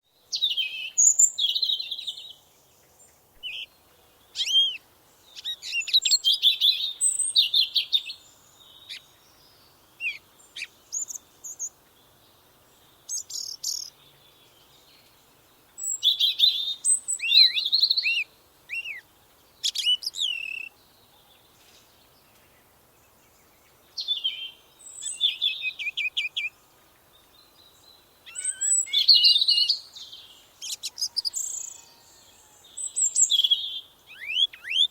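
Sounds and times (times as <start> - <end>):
songbirds singing: 0.0 - 34.9.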